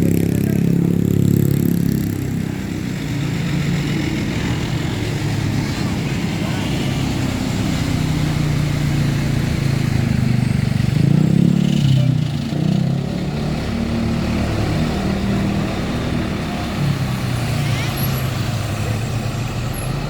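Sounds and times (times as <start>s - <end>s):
traffic noise: 0.0s - 20.0s
vehicle engine passing by: 0.0s - 20.0s.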